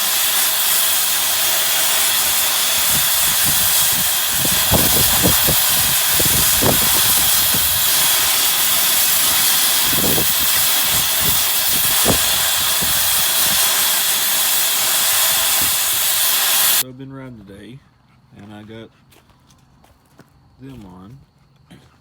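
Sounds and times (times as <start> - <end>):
loud steady hiss: 0.0 - 16.8.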